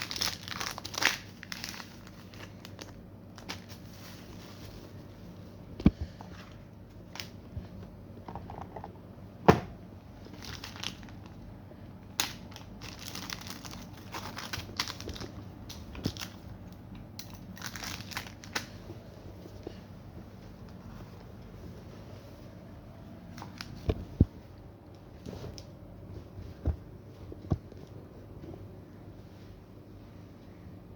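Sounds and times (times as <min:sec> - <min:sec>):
packaging crinkling: 0:00.0 - 0:05.0, 0:10.2 - 0:11.4, 0:12.1 - 0:18.8.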